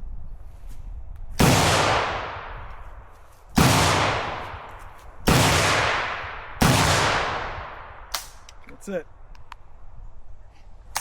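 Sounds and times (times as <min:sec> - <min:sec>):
rifle shots with echo: 0:01.4 - 0:02.7, 0:03.6 - 0:08.4.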